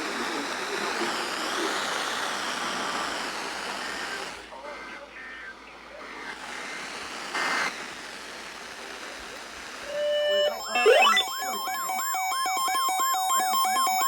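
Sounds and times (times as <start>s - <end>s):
steady hiss: 0.0s - 4.9s, 5.8s - 10.4s
electronic alert tone: 9.9s - 14.0s
warbling siren-like tone: 9.9s - 14.0s.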